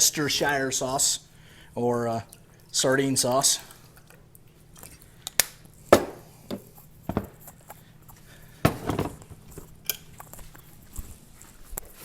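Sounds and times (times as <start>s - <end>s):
kitchen utensils clicking and knocking: 6.0s - 7.4s, 8.7s - 9.4s
utensils clattering: 8.7s - 9.4s.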